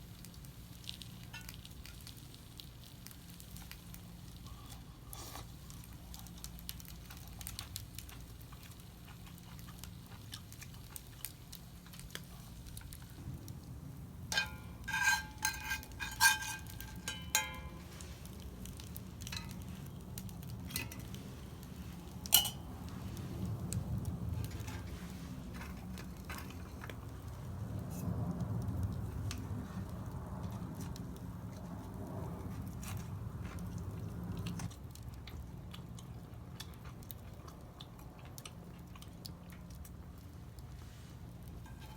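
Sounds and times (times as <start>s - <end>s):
low steady background noise: 0.0s - 41.9s
tableware clinking: 14.4s - 17.8s, 22.4s - 22.7s.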